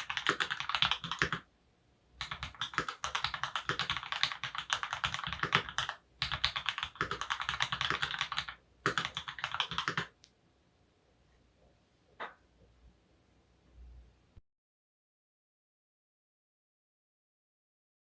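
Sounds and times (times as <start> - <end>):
mechanical keyboard typing: 0.0 - 1.5, 2.2 - 10.2.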